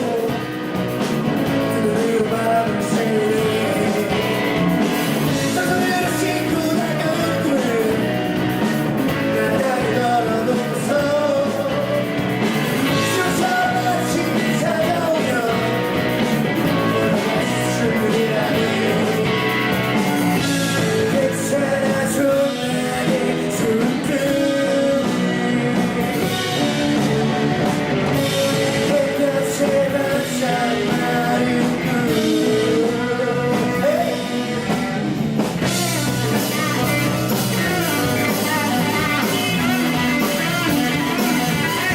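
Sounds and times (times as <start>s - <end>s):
rock band playing live: 0.0s - 41.9s.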